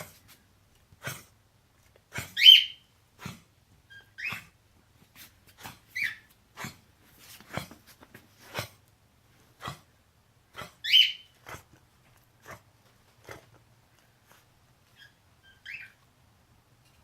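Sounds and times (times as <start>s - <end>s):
pet coughing: 0.0s - 0.3s, 1.0s - 1.4s, 2.1s - 3.5s, 4.2s - 4.6s, 5.5s - 8.8s, 9.4s - 11.8s.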